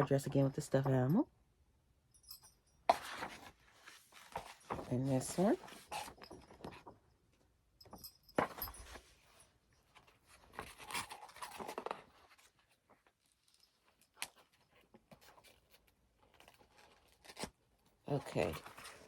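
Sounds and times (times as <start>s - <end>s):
paper pages rustling: 2.9s - 7.0s, 10.0s - 13.5s, 14.2s - 19.0s.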